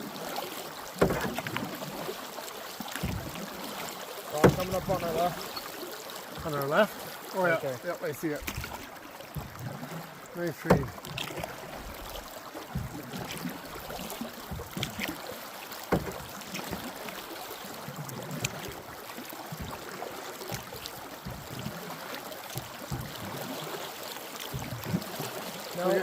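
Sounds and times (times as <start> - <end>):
paddle splashes: 0.0 - 26.0
water rushing: 0.0 - 26.0
knocks on canoe: 0.9 - 1.8, 2.9 - 3.5, 4.3 - 5.7, 8.4 - 9.8, 10.5 - 15.2, 15.8 - 17.2, 18.1 - 18.9, 19.5 - 23.5, 24.4 - 25.3.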